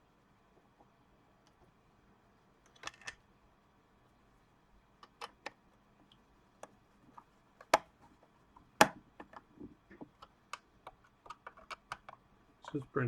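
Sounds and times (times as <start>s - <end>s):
plastic parts clicking and knocking: 5.0s - 5.6s, 6.6s - 12.2s.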